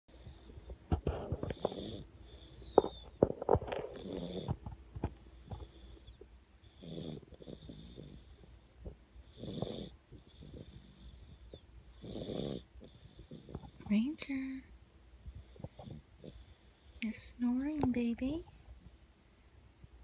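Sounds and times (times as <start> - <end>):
sharp snorts: 0.9 - 3.0, 3.8 - 4.6, 9.4 - 11.1, 12.0 - 13.8
rattling snores: 0.9 - 4.8, 5.4 - 14.4, 15.4 - 17.2.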